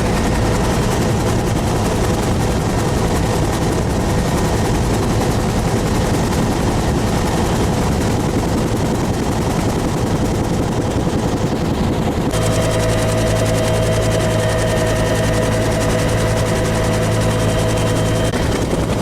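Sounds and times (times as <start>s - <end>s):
low hum: 0.0s - 5.0s, 10.7s - 19.0s
steady whine: 0.0s - 5.6s, 10.4s - 19.0s
helicopter rotor beating: 0.0s - 19.0s.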